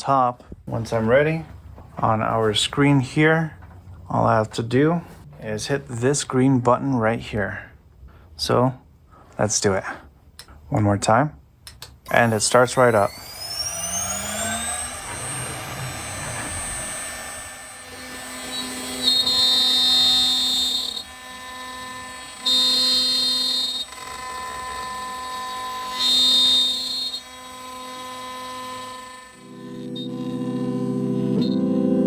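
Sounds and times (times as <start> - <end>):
router spindle whine cutting wood: 12.1 - 32.0.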